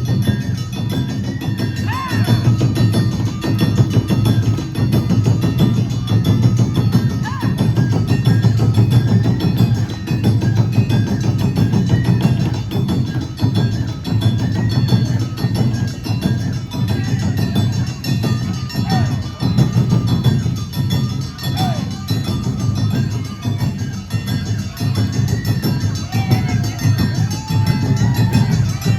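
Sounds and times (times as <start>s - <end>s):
high melody line: 0.0s - 28.9s
taiko drums: 0.0s - 28.9s.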